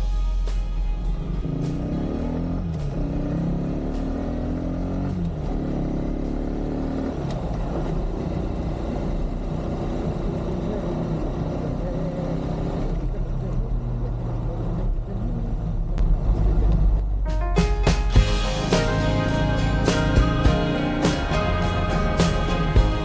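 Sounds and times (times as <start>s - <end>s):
motorcycle engine accelerating: 1.0s - 13.2s.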